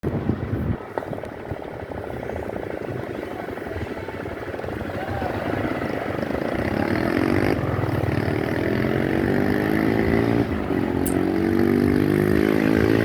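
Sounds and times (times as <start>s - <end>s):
vehicle engine accelerating: 5.2s - 13.0s.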